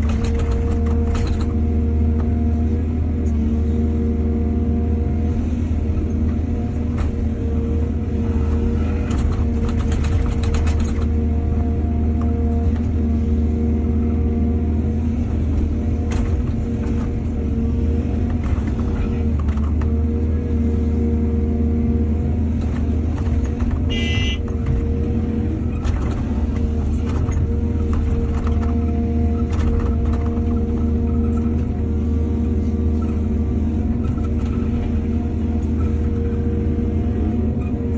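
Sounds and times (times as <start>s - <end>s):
excavator diesel engine running: 0.0s - 37.9s.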